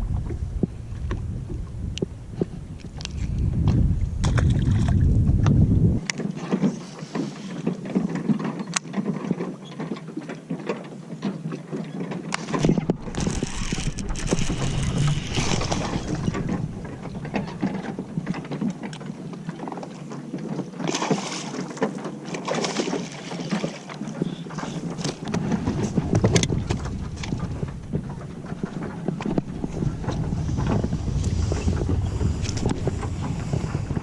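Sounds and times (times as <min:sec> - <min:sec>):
wind buffeting microphone: 0:00.0 - 0:06.2, 0:12.4 - 0:19.8, 0:24.2 - 0:34.0
water against boat hull: 0:00.0 - 0:34.0.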